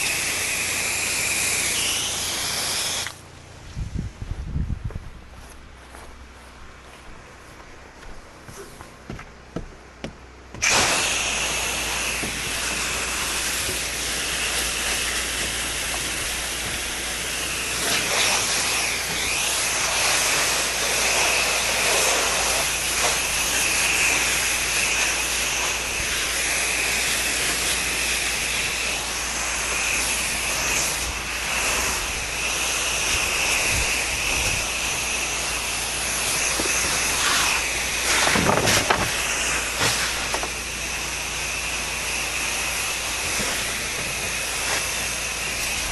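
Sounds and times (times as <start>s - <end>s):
pressure washer spray hissing: 0.0s - 3.2s, 10.6s - 45.9s
low engine hum: 2.3s - 10.7s.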